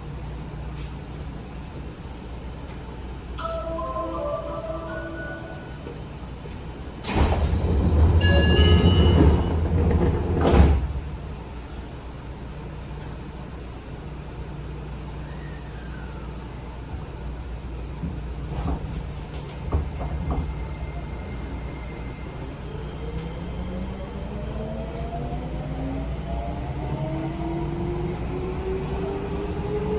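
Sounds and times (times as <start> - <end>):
door chime: 3.4 - 6.0, 8.2 - 9.7
sliding doors closing: 3.6 - 11.8
loud door clunk: 7.0 - 11.2.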